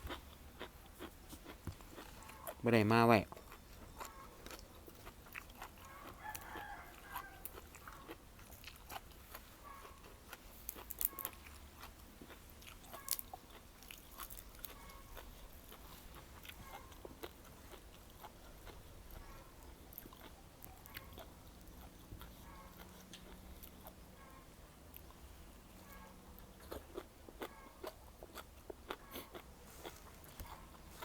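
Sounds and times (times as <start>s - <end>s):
chewing and crunching: 0.0s - 31.0s
rooster crowing: 5.8s - 7.6s.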